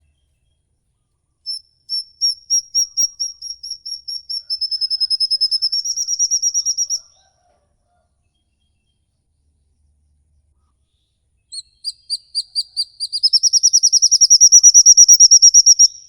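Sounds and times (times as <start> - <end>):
songbird trilling call: 1.5 - 7.0, 11.6 - 16.0.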